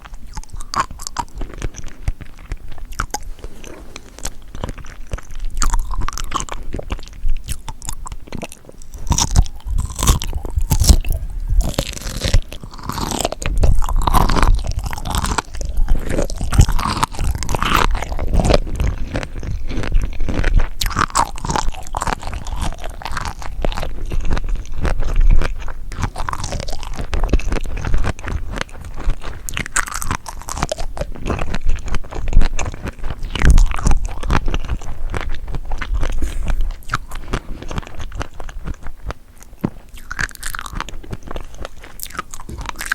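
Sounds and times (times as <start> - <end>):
mouth chewing seafood: 0.0 - 42.9.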